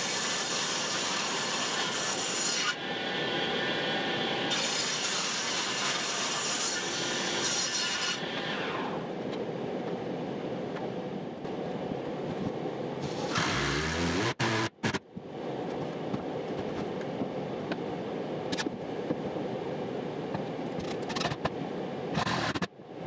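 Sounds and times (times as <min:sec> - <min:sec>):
tool cutting wood: 0:00.0 - 0:02.8, 0:04.5 - 0:09.0, 0:13.0 - 0:15.0, 0:22.2 - 0:22.7.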